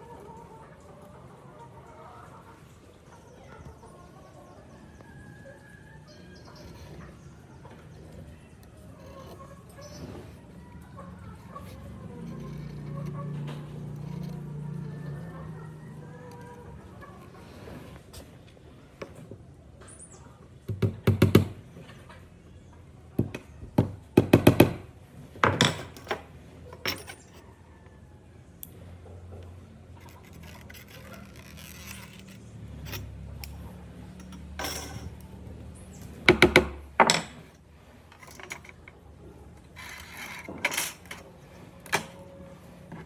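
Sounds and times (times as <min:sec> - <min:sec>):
sharp knocks and clatters: 0:36.1 - 0:37.6.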